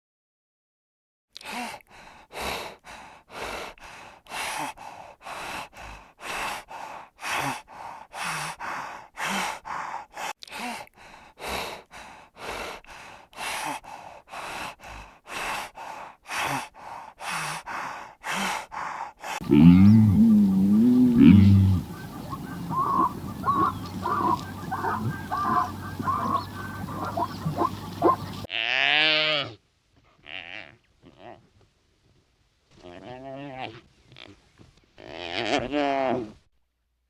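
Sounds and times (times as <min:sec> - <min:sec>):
animal panting: 0:02.0 - 0:10.3, 0:11.0 - 0:28.5.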